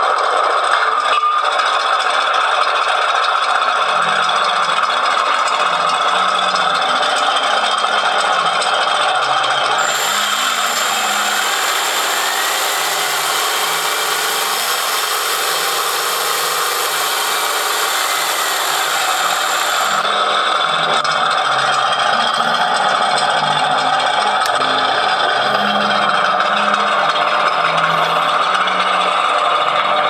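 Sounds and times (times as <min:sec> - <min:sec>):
simulated tank engine: 0:00.0 - 0:30.0
electric motor whir: 0:03.2 - 0:30.0.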